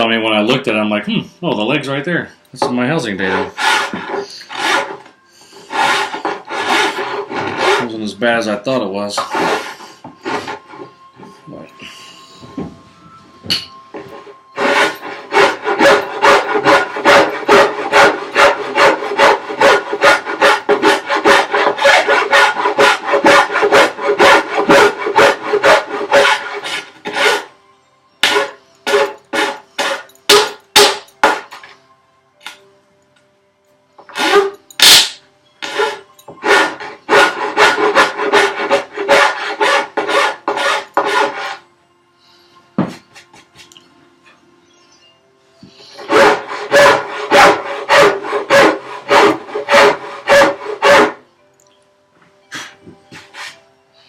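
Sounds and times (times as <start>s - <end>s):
hand file rasping wood: 3.2s - 8.5s, 9.2s - 11.8s, 14.6s - 27.5s, 28.2s - 31.6s, 34.1s - 35.0s, 35.6s - 41.6s, 45.9s - 51.2s.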